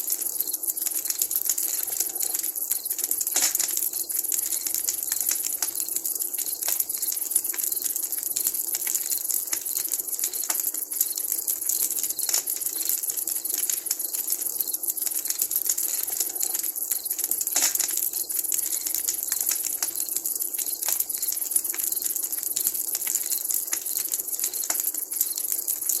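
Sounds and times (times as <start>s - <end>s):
campfire crackling and popping: 0.0s - 26.0s.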